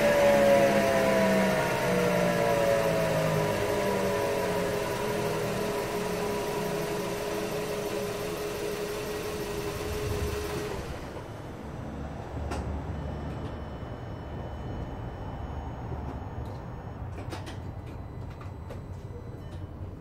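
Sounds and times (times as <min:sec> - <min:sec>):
car drivetrain drone and whine: 0:00.0 - 0:20.0.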